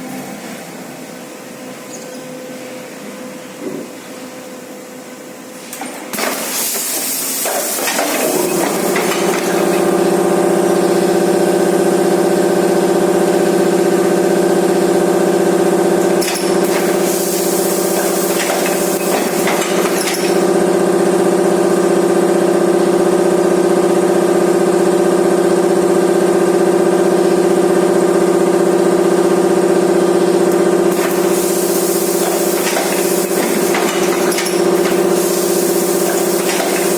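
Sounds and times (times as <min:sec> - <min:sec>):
machine motor humming: 0:06.1 - 0:12.4, 0:28.6 - 0:36.9.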